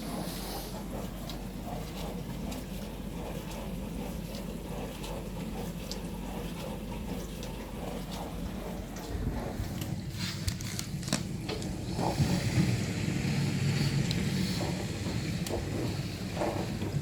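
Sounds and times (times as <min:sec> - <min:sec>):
dishwasher water spraying: 0:08.2 - 0:17.0.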